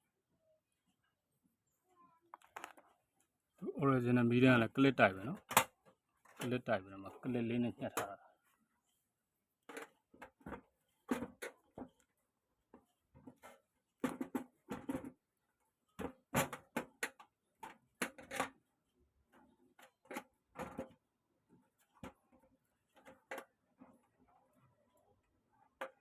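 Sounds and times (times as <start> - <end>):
plastic and metal parts clicking: 2.3 - 3.0, 5.2 - 8.2, 16.0 - 18.7, 21.6 - 24.6.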